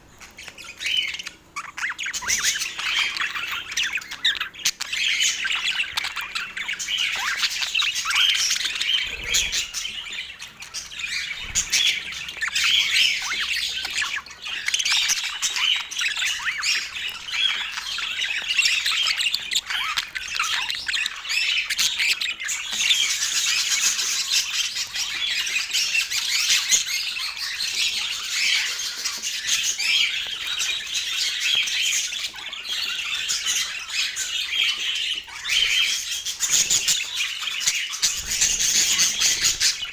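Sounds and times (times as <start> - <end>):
budgerigars chattering: 0.2 - 39.9.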